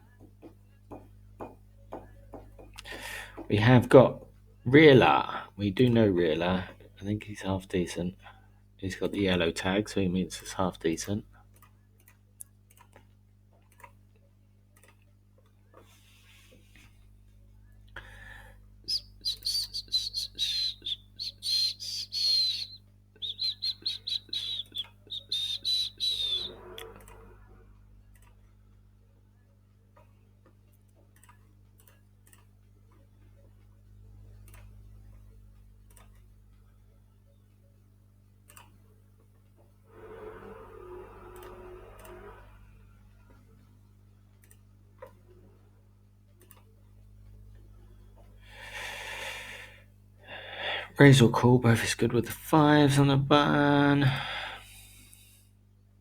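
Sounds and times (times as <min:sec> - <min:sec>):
low electrical hum: 0:00.0 - 0:56.0
breath into microphone: 0:02.8 - 0:03.4
computer mouse clicks: 0:11.5 - 0:14.2, 0:14.8 - 0:16.0, 0:26.5 - 0:27.3, 0:28.1 - 0:28.4, 0:29.9 - 0:33.6, 0:34.3 - 0:36.3, 0:38.4 - 0:38.8, 0:39.6 - 0:42.6, 0:44.3 - 0:45.4, 0:46.4 - 0:46.8
bird chirping: 0:18.9 - 0:26.6.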